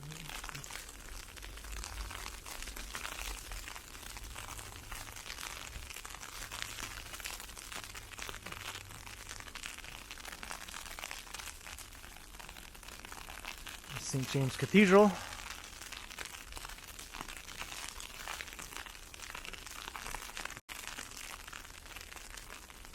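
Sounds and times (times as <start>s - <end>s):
ice pellets ticking: 0.0s - 22.9s.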